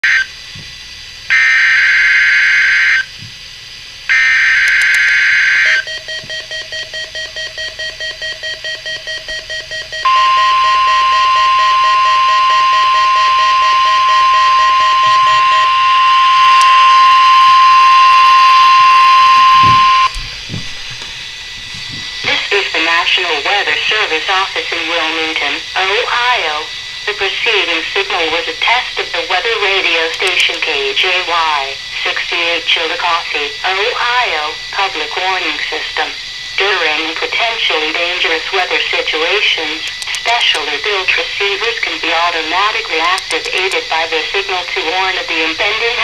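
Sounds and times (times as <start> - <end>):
steady alarm tone: 0.0 - 0.4, 1.3 - 3.2, 4.1 - 46.0
rapid pulsing beeps: 4.1 - 20.2.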